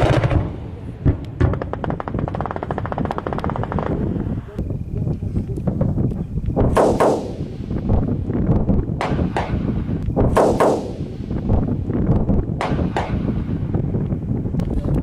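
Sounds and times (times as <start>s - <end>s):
low background rumble: 0.0s - 15.0s
gunshots echoing: 6.6s - 8.1s, 8.9s - 11.7s, 12.5s - 13.6s.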